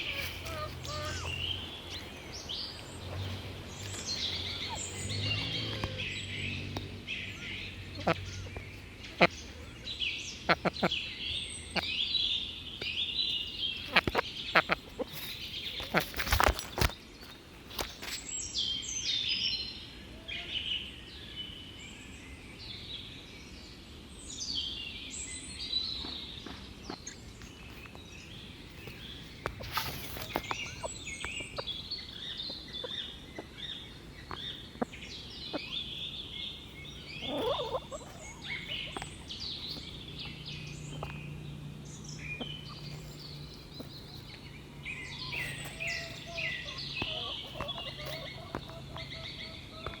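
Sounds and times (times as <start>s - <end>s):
low bird call: 0.0s - 12.0s, 28.8s - 41.3s
small birds chirping: 0.0s - 50.0s.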